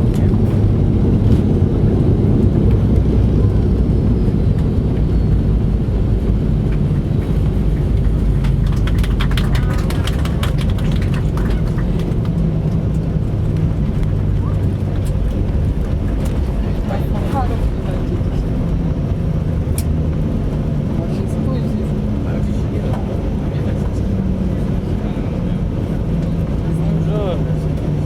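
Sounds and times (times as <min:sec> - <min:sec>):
airplane landing rumble: 0:00.0 - 0:28.0.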